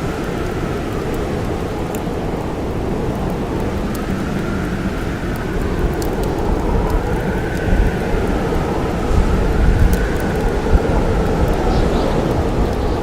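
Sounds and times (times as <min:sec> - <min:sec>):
blizzard wind howling: 0:00.0 - 0:13.0
campfire crackling: 0:00.0 - 0:13.0.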